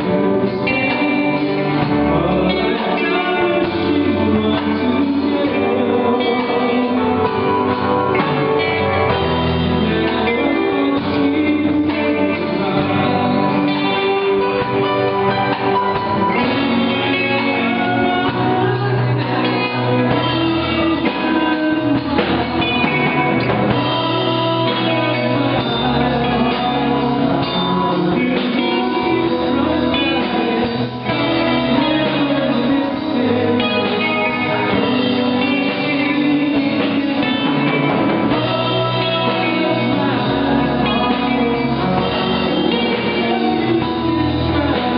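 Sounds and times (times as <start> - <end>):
live band playing: 0.0 - 44.9
person singing: 0.0 - 44.9.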